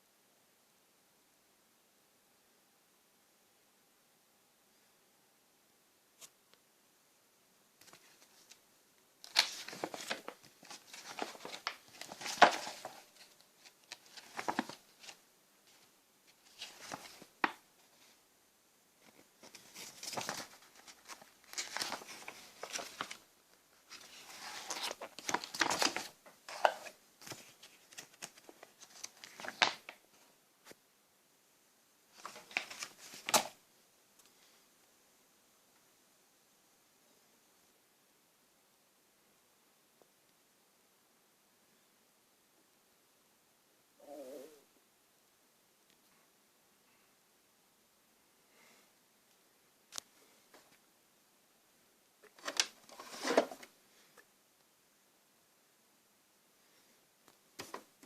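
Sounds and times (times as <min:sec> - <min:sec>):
rustling and crinkling handling: 0:07.8 - 0:08.6, 0:09.2 - 0:18.2, 0:19.0 - 0:30.8, 0:32.1 - 0:33.6, 0:52.2 - 0:53.8.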